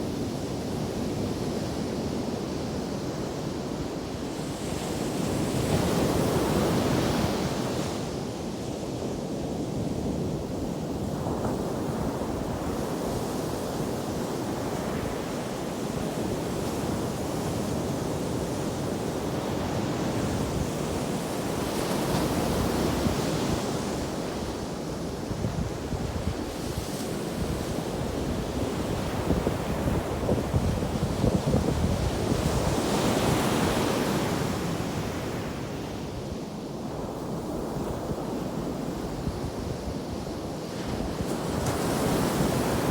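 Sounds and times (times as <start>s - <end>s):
ocean waves breaking on beach: 37.6s - 42.9s.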